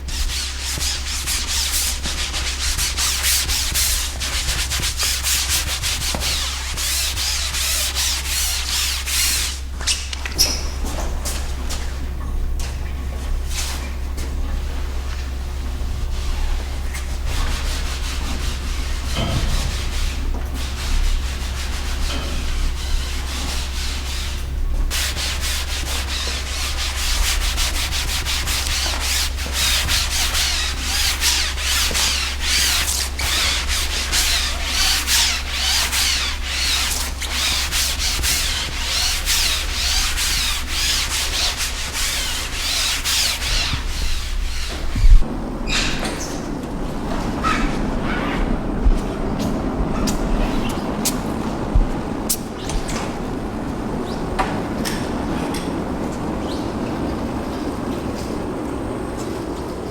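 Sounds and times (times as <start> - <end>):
hand rubbing a surface: 0.0 - 10.1, 15.6 - 45.3.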